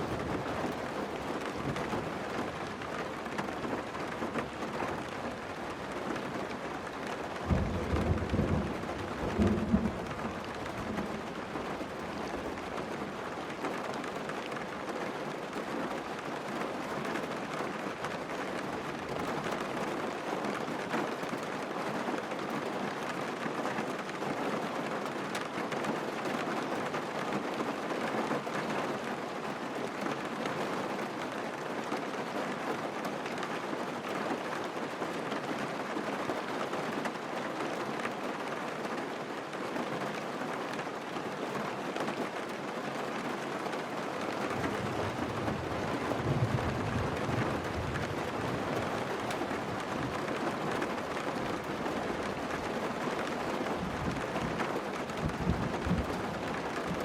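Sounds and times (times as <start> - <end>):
low thunder rumble: 7.4 - 11.7.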